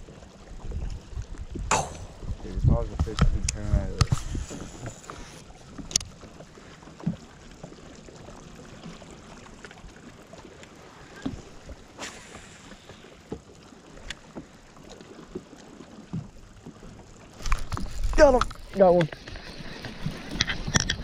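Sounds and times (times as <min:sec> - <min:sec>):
wind and water hiss: 0:00.0 - 0:21.0.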